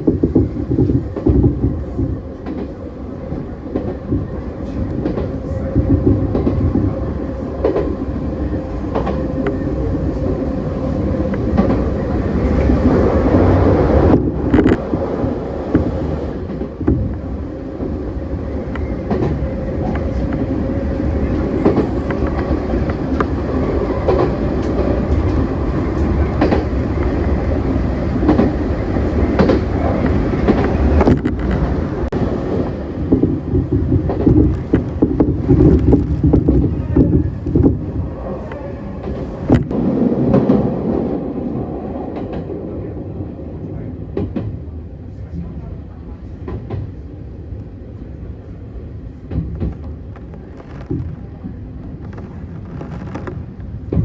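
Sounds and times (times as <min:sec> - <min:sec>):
train rumbling on rails: 0:00.0 - 0:54.0.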